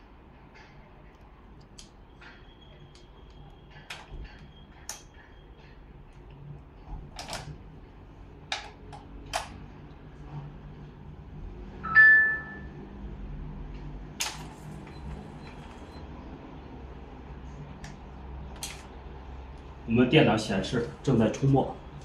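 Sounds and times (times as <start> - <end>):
short beep: 11.8 - 12.8
inkjet printer humming: 14.2 - 17.6.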